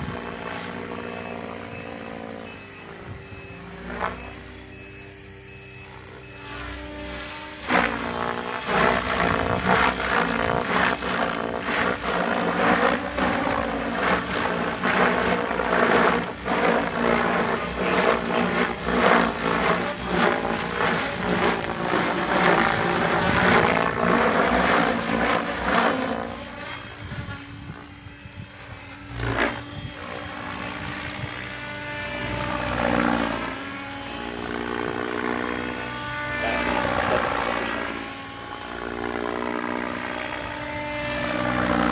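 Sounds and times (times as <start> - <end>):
rc helicopter rotor and motor: 0.0 - 41.9.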